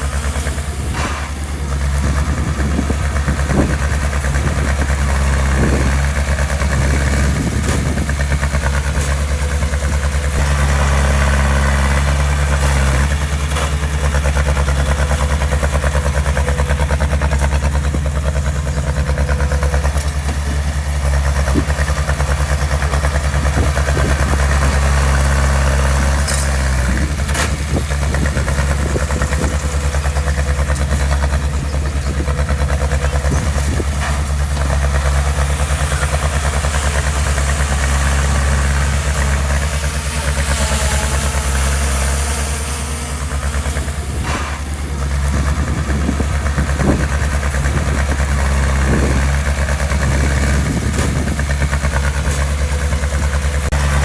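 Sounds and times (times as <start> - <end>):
diesel engine of heavy machinery: 0.0 - 54.0.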